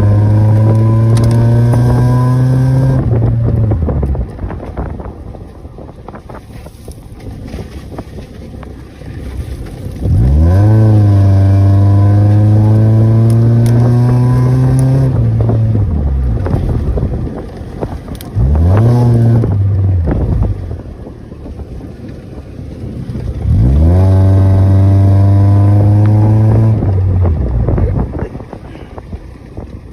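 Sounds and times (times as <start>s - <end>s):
car engine idling and revving: 0.0s - 29.9s.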